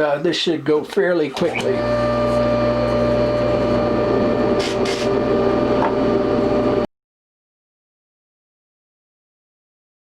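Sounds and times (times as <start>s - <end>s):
buffing machine whirring: 1.4s - 6.8s.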